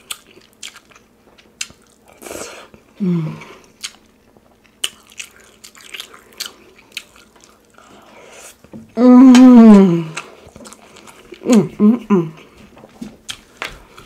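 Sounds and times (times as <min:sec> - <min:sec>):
crunchy chewing and biting: 0:03.6 - 0:08.1.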